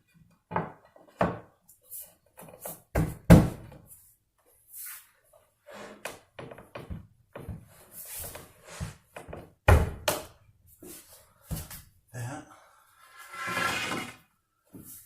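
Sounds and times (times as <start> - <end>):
boards brushing and sliding: 13.0 - 15.0.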